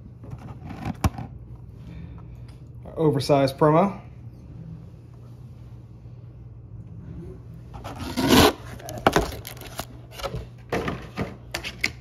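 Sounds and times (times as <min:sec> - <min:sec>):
cardboard box scraping: 0:07.8 - 0:09.6.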